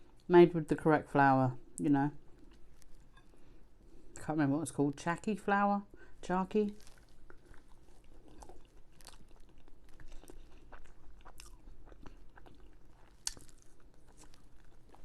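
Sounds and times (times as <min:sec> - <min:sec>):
person chewing and biting food: 0:02.3 - 0:03.4, 0:06.7 - 0:15.0.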